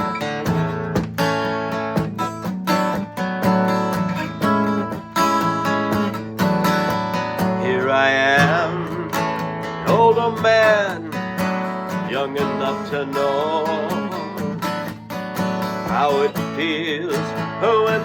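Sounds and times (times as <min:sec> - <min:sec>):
acoustic guitar strumming: 0:00.0 - 0:18.0
man singing: 0:07.4 - 0:14.7, 0:15.8 - 0:18.0.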